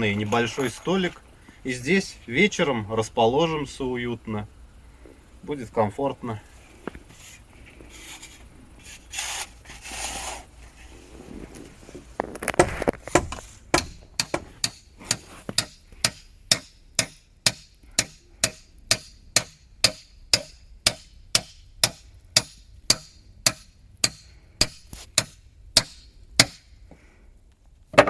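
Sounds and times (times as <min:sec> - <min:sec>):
hammer driving nails into wood: 0:12.5 - 0:26.7.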